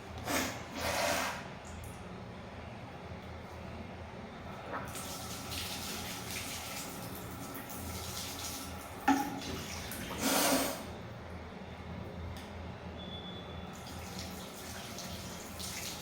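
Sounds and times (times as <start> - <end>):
tap water running into basin: 4.8 - 10.7, 13.7 - 16.0.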